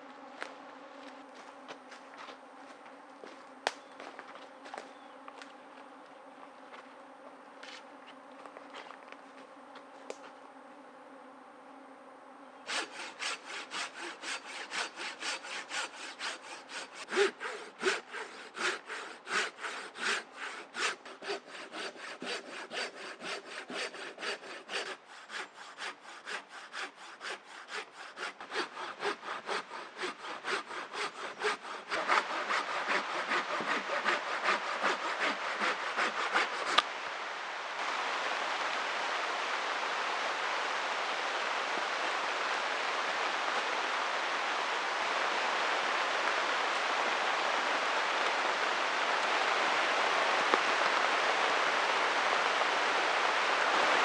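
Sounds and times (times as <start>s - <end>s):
steady rushing hiss: 12.6s - 54.0s
hand saw cutting wood: 12.7s - 36.9s.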